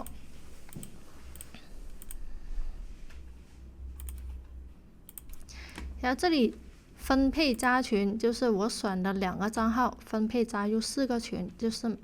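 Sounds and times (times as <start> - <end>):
computer mouse clicking: 0.0 - 2.2, 4.0 - 4.5, 5.1 - 5.9, 7.4 - 7.8
steady low hum: 0.0 - 8.8.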